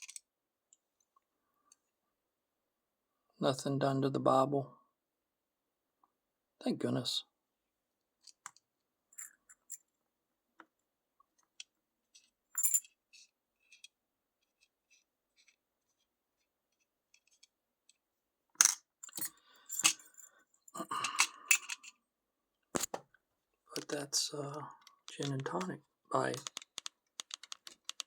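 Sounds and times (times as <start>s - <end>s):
small metal parts clicking: 26.3s - 28.0s.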